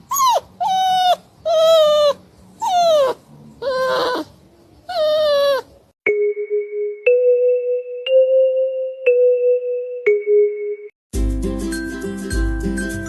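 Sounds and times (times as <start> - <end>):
dog whining barks: 0.0 - 5.8.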